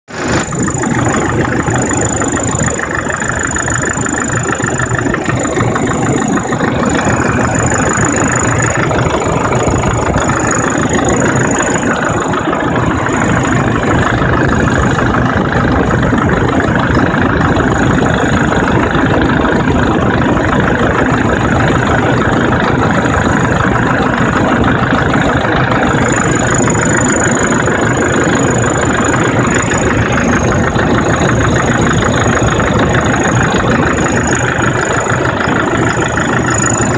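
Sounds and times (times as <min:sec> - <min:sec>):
diesel engine idling: 0:00.1 - 0:36.9.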